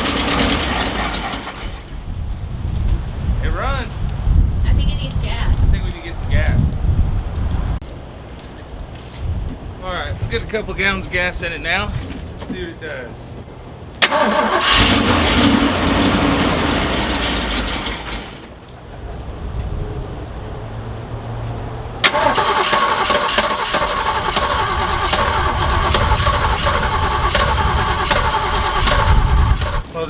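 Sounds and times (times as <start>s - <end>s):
engine cranking on starter: 0.0s - 2.0s, 14.0s - 18.6s, 22.0s - 30.0s.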